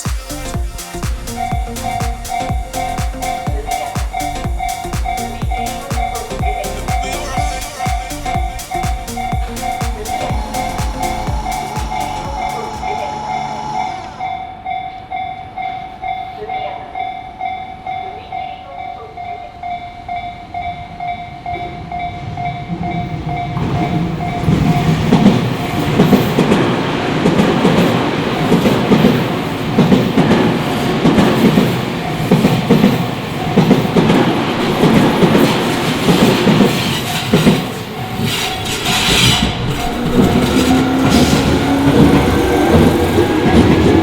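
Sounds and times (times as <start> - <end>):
level-crossing warning bell: 0.0 - 44.0
rising whine: 6.9 - 14.6, 38.8 - 44.0
train wheels clicking over rail joints: 23.4 - 44.0.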